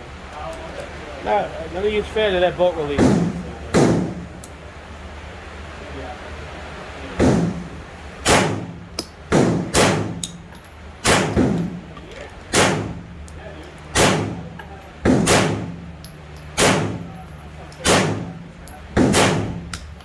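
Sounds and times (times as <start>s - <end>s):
gunshots: 3.0s - 4.3s, 7.2s - 10.4s, 11.0s - 11.9s, 12.5s - 13.2s, 13.9s - 16.0s, 16.6s - 19.8s.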